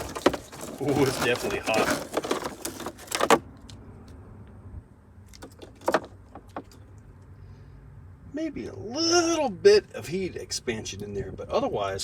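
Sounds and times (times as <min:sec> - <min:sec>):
hands handling battery pack: 0:00.0 - 0:03.8.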